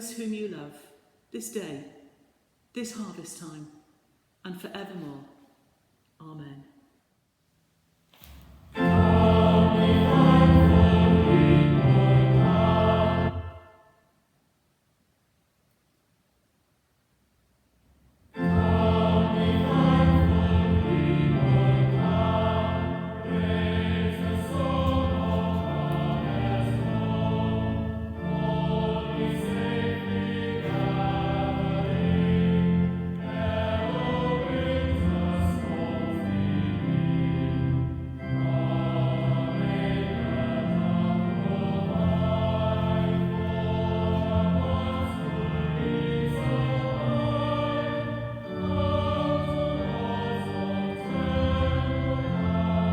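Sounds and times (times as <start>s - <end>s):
choir singing sustained chords: 8.7s - 14.0s, 18.3s - 52.9s.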